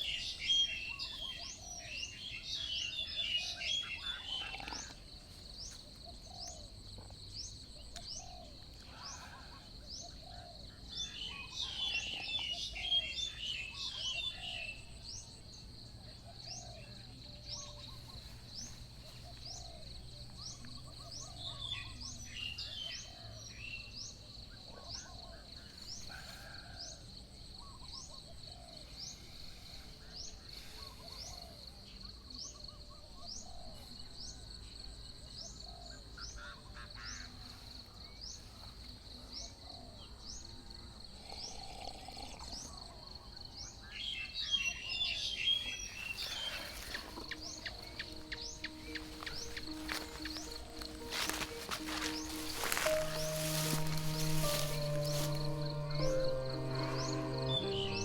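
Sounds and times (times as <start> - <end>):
birds twittering: 0.0 - 27.0, 41.4 - 58.0
lower bird call: 44.6 - 58.0
bird rising chirp: 45.2 - 58.0.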